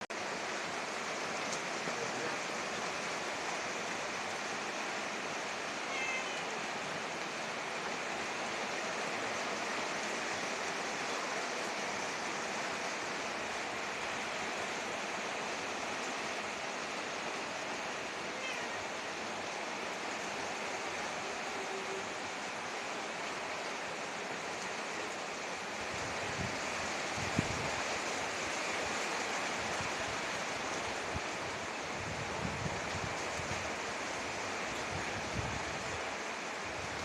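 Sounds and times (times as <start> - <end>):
heavy rain pouring: 0.1 - 37.0
cat meowing: 5.8 - 6.6, 18.3 - 18.9
strong wind: 23.8 - 37.0.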